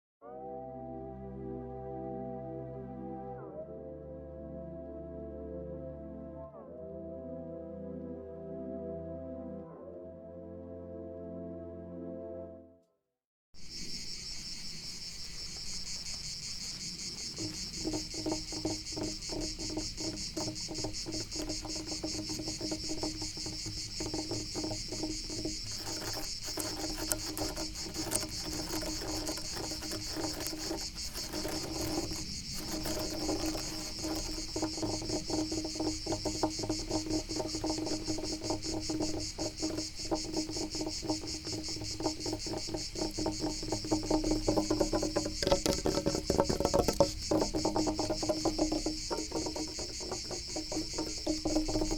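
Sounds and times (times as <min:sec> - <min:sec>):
crickets chirping: 0:13.6 - 0:51.9
scratching on wood: 0:13.6 - 0:51.9.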